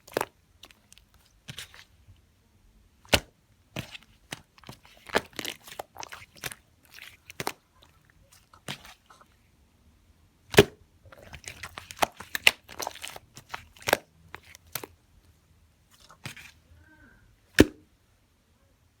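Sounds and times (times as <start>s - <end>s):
slime clicking pops: 17.6s - 17.8s.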